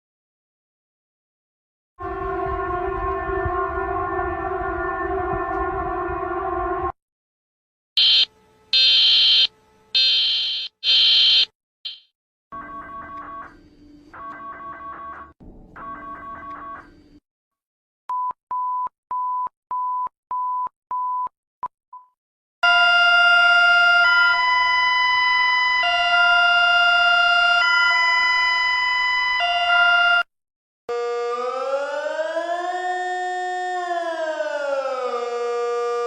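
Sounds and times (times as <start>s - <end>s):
siren wail: 2.0s - 7.0s, 8.0s - 12.0s, 22.6s - 30.3s, 30.9s - 36.0s.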